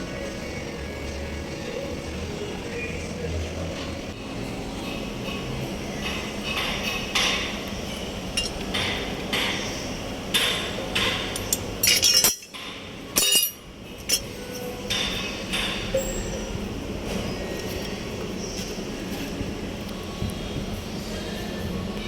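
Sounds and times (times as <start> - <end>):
sharp metallic clinks and knocks: 6.0 - 9.7, 10.3 - 16.4.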